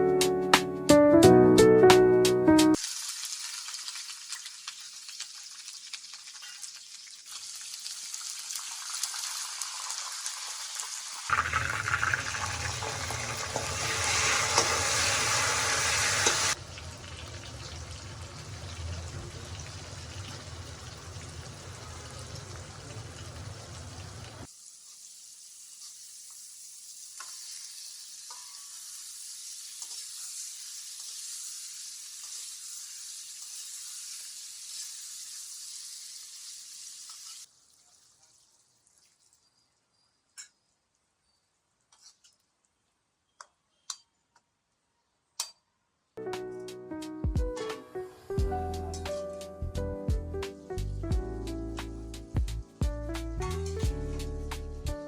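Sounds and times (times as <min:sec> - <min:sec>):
food sizzling in hot oil: 0:02.7 - 0:40.0.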